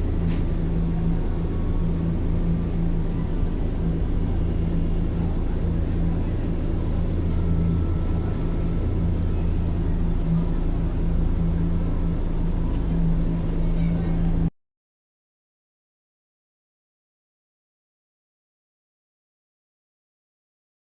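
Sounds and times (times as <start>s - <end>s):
vehicle engine humming: 0.0s - 14.5s.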